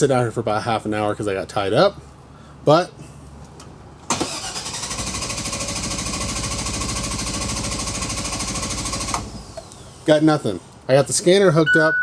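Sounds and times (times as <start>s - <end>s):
engine cranking on starter: 4.1s - 9.7s.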